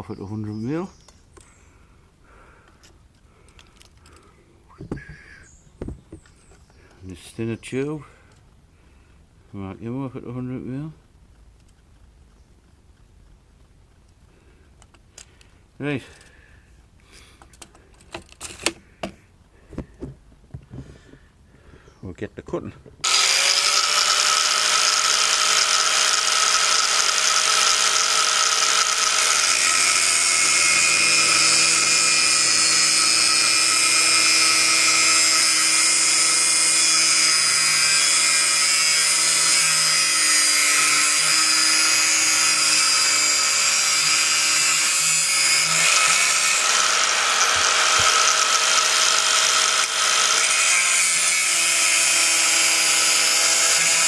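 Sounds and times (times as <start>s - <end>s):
electric power tool whining: 23.0s - 54.0s.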